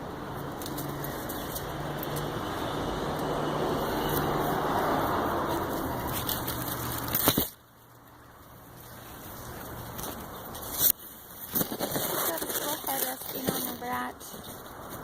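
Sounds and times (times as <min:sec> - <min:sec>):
vehicle passing: 0:00.0 - 0:11.4.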